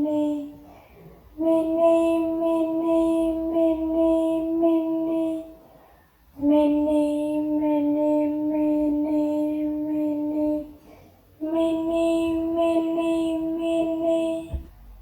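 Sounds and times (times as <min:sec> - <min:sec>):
child-like voice singing long note: 0:11.4 - 0:14.7.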